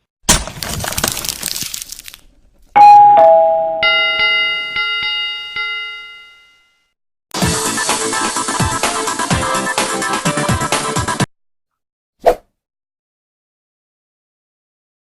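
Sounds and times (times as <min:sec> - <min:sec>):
notification bell ringing: 0:02.8 - 0:06.8
two-note ding-dong chime: 0:02.8 - 0:06.8.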